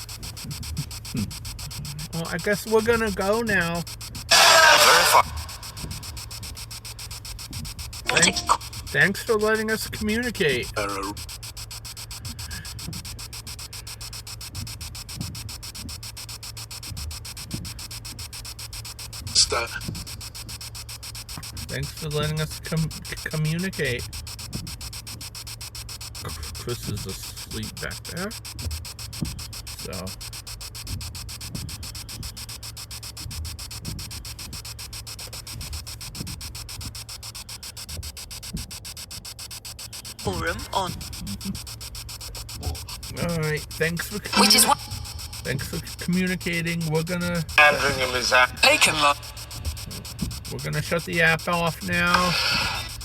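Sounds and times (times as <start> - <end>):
radio static sweeping: 0.0 - 53.0
faint blips of sound fragments: 5.4 - 8.9.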